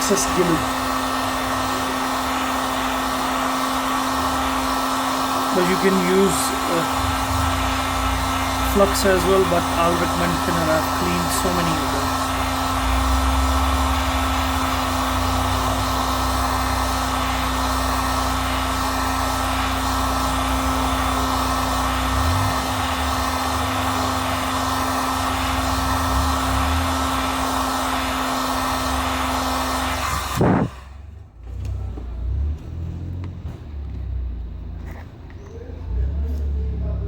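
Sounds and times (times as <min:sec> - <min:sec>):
hot-air blower humming and whining: 0:00.0 - 0:31.0.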